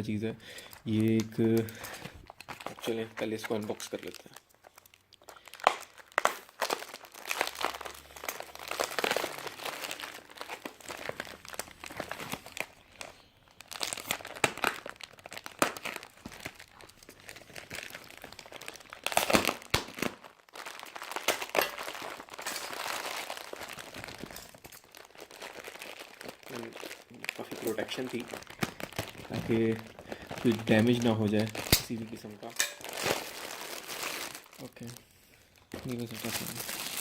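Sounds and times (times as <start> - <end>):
packaging crinkling: 0.6 - 37.0
packaging tearing: 0.7 - 35.0, 35.8 - 37.0.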